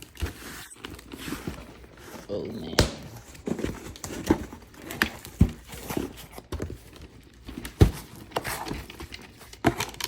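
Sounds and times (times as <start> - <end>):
knocks and taps from unpacking: 2.7 - 10.0.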